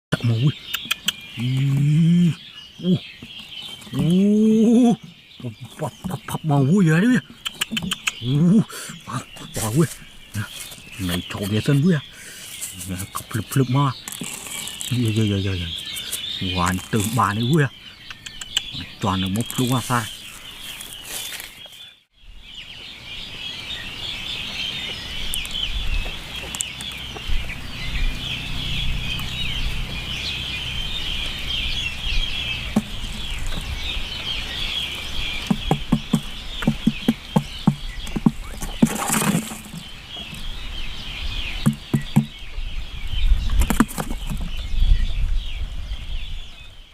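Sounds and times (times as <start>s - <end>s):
birds chirping: 0.0s - 46.9s
low clucking calls: 0.1s - 20.9s, 31.9s - 40.6s, 41.5s - 42.5s.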